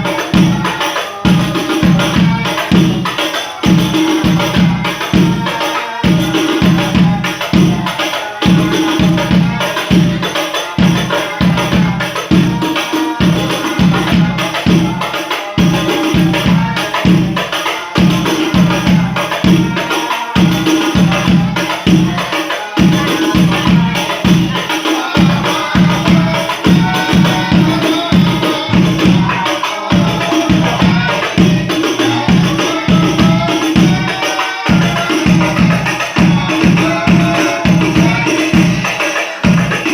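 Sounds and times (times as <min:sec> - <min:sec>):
frame drums and jingles beating: 0:00.0 - 0:39.9
voices singing: 0:00.0 - 0:39.9.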